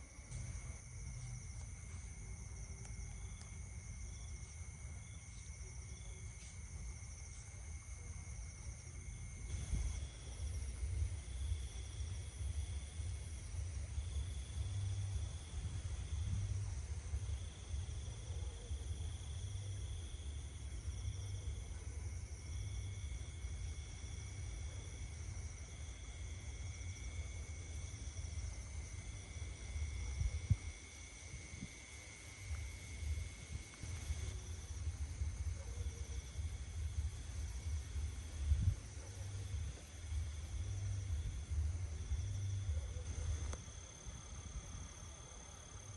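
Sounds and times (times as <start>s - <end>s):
insects trilling: 0.0s - 45.9s
wind rumble on microphone: 9.2s - 17.9s, 29.7s - 31.9s, 36.4s - 43.6s.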